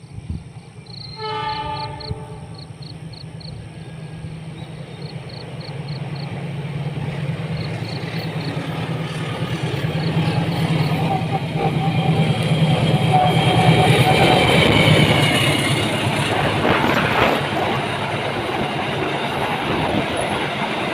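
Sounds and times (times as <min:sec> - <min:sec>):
train rumble: 0:00.0 - 0:20.9
train horn blast: 0:01.1 - 0:02.8.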